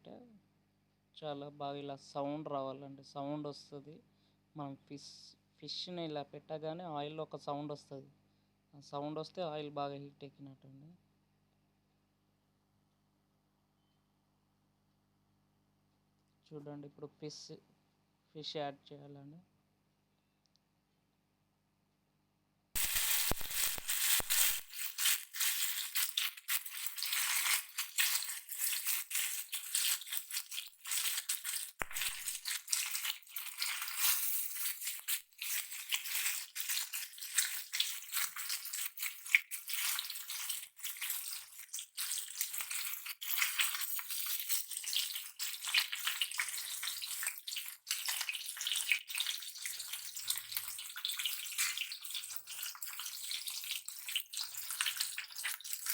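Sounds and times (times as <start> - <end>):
fish sizzling in hot oil: 22.8 - 55.9.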